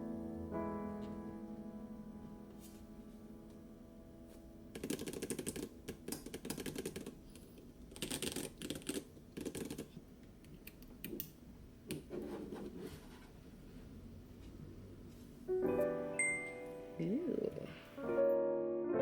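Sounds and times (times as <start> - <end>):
piano notes: 0.0 - 6.1, 14.0 - 19.0
mechanical keyboard typing: 4.8 - 7.2, 7.9 - 10.0.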